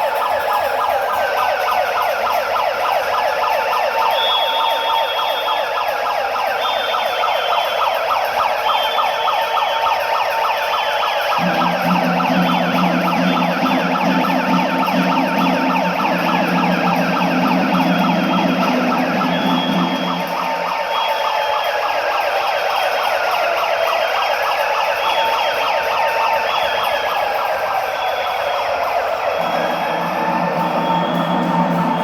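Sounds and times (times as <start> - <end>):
siren wailing: 0.0 - 32.0
steady low hum: 11.4 - 20.7.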